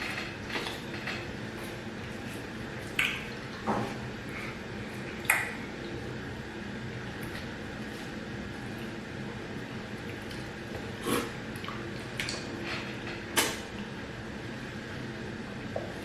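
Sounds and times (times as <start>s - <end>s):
eating sounds: 9.9s - 12.6s.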